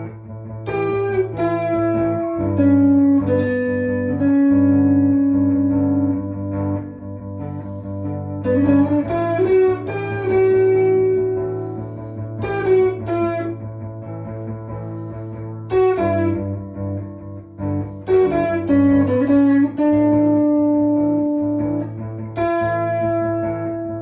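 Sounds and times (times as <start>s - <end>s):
electric guitar lead: 0.0s - 24.0s
looped guitar backing: 0.0s - 24.0s.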